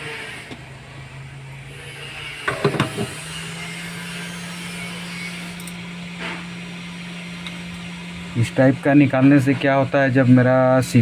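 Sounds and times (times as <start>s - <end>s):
hot-air station blowing hum: 0.0s - 11.0s
knocking: 2.5s - 3.1s.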